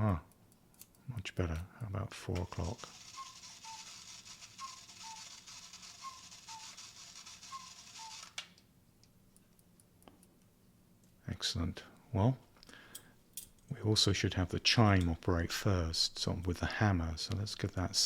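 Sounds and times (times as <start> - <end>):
cuckoo clock calling: 2.7 - 8.4.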